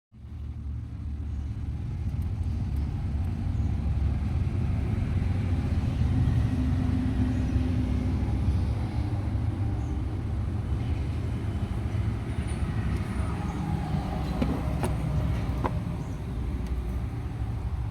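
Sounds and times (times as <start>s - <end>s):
diesel engine cranking: 8.3s - 17.9s.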